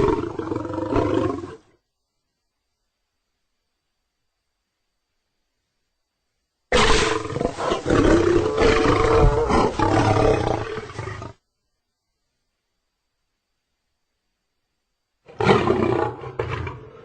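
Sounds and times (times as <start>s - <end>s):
lion roar: 0.0s - 1.7s, 6.7s - 11.4s, 15.3s - 17.0s.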